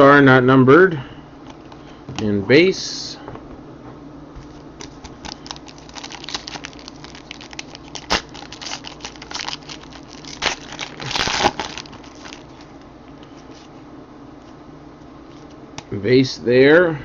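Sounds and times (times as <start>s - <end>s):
wrapper crinkling: 4.4s - 12.8s.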